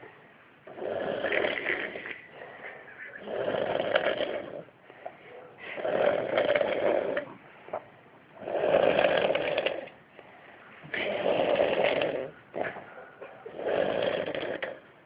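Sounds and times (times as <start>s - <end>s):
quiet breathing: 0.0s - 14.9s
man snoring: 0.7s - 2.2s, 3.2s - 4.7s, 5.8s - 7.3s, 8.4s - 9.9s, 11.0s - 12.3s, 13.5s - 14.8s.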